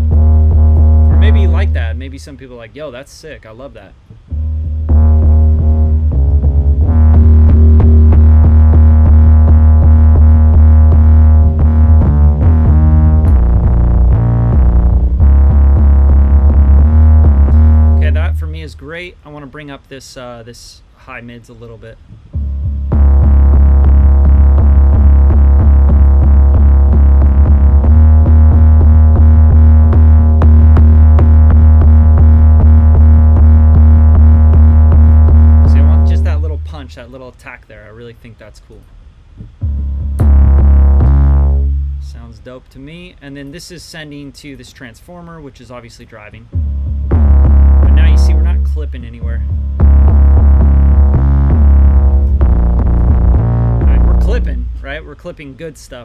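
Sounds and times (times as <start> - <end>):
distorted bass synth pattern: 0.0 - 2.3, 4.3 - 18.9, 22.3 - 37.1, 39.4 - 42.4, 46.5 - 55.2.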